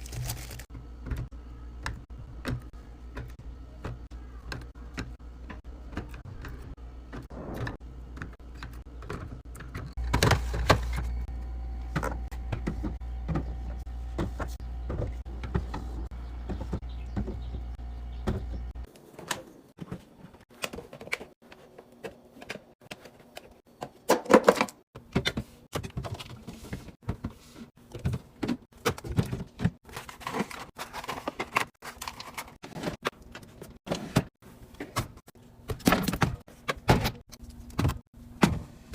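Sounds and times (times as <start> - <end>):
low hum: 0.5 - 18.9.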